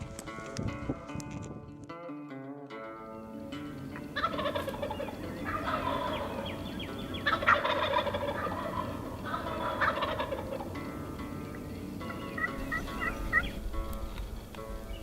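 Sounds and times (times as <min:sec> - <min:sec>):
wild turkeys gobbling: 0:03.9 - 0:14.2.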